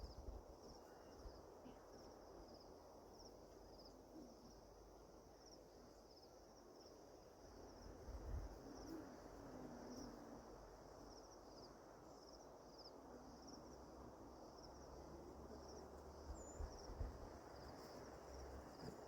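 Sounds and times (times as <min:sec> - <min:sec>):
insect chirping: 0:00.0 - 0:19.0.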